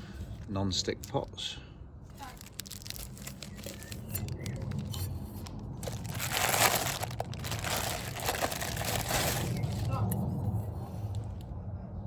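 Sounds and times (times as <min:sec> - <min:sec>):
plastic packaging crinkling: 0:02.2 - 0:10.0.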